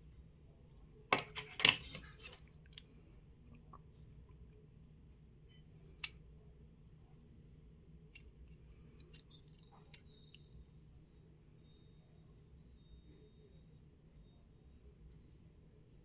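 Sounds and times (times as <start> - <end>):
small phone parts clicking: 8.1 - 10.4.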